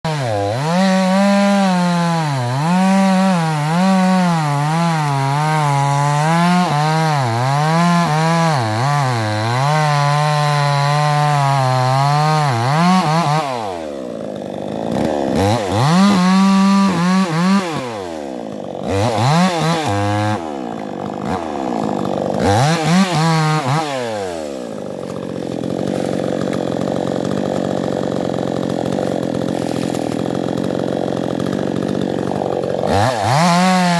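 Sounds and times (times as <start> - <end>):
chainsaw cutting wood: 0.0 - 33.9.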